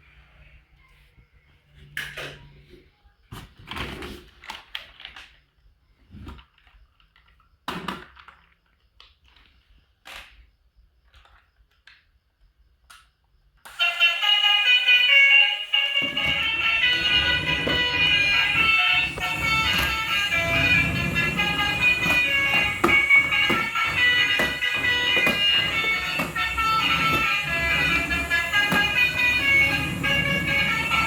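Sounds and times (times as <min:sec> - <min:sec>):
toys and packaging handled: 0:03.3 - 0:05.5, 0:06.1 - 0:10.4.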